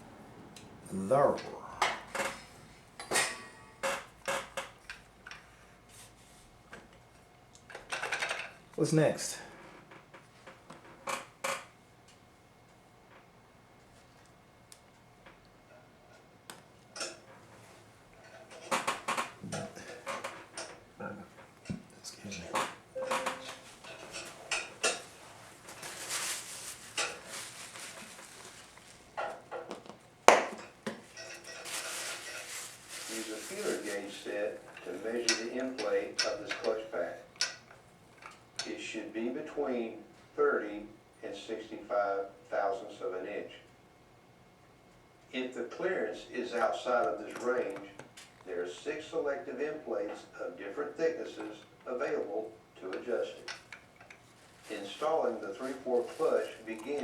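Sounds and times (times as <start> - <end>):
tools being moved and set down: 2.1 - 4.4, 23.0 - 29.9, 30.6 - 32.6.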